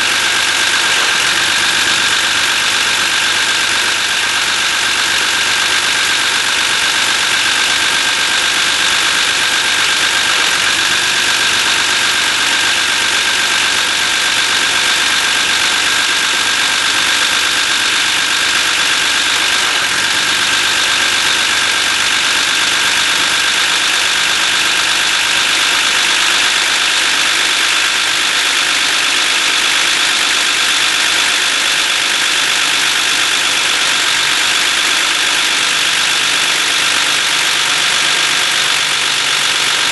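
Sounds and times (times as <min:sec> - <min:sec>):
high-pitched whine: 0:00.0 - 0:28.3
car engine idling: 0:00.0 - 0:39.9.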